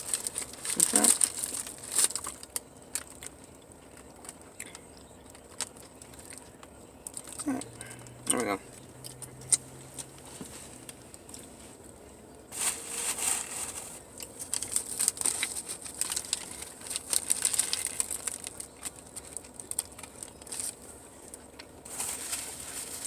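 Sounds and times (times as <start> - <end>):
paper wrapper crinkling: 0.0 - 3.4, 12.5 - 23.0.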